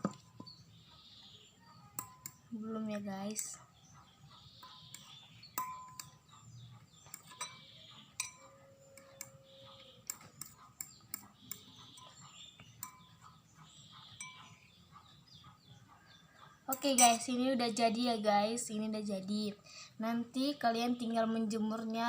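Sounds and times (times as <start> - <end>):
fork tapping a container: 2.0 - 2.4, 4.9 - 6.2, 7.0 - 9.4, 10.0 - 13.2.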